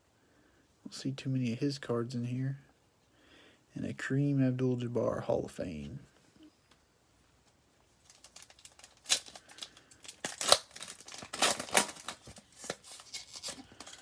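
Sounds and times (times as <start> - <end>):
foil wrapper tearing and crinkling: 8.0 - 14.0.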